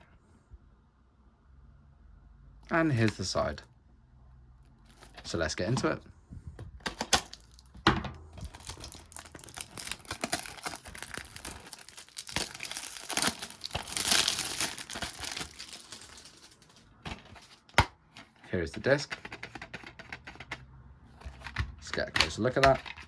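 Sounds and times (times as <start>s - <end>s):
shrink-wrap crinkling and tearing: 6.9s - 17.7s.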